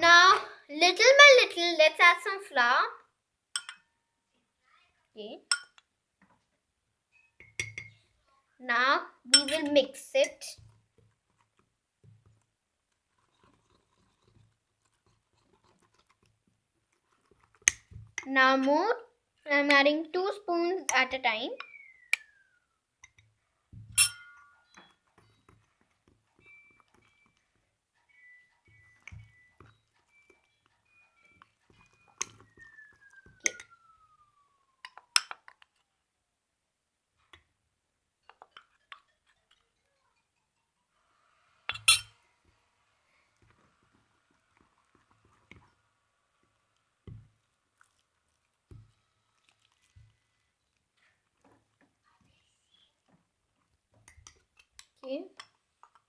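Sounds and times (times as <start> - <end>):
spoon clinking against mug: 3.6 - 3.9, 5.5 - 5.8, 7.4 - 8.0, 9.4 - 9.7, 23.9 - 25.0, 41.7 - 42.2
spoon scraping in a mug: 13.1 - 17.9, 24.0 - 27.4, 41.0 - 42.3.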